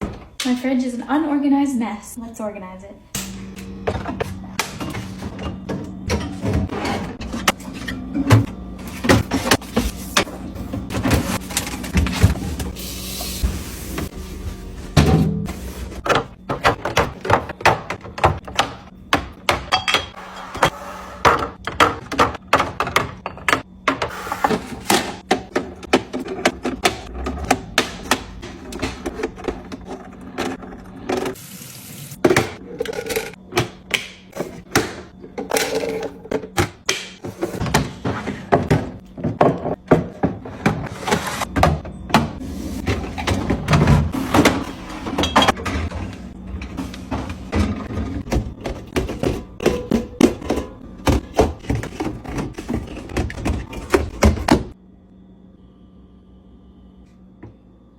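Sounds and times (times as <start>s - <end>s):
plastic bins and jars clicking: 46.8s - 54.8s.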